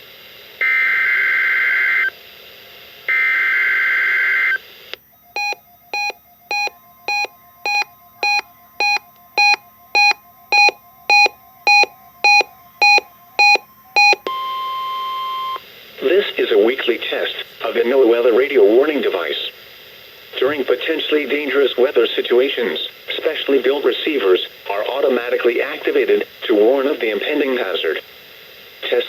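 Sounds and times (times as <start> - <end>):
steady warning tone: 5.1 - 15.6
weather radio alert beeping: 5.4 - 14.4.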